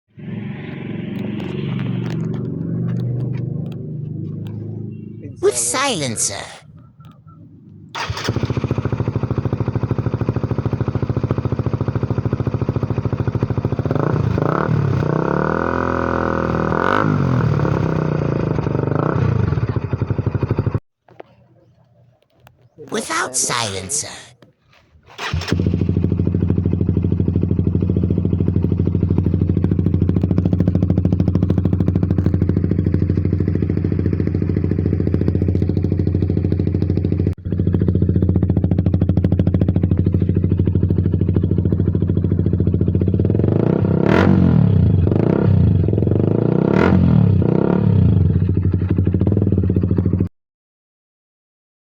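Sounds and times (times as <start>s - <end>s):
motorcycle engine idling: 6.8s - 14.4s, 19.6s - 20.8s, 25.5s - 43.6s, 48.2s - 50.3s.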